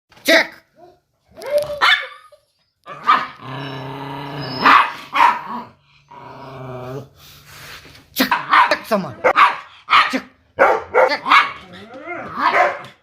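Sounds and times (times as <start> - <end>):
dog barking: 1.8 - 2.2, 2.9 - 3.4, 4.6 - 5.6, 8.3 - 11.7, 12.3 - 13.0
dog growling: 2.9 - 7.4.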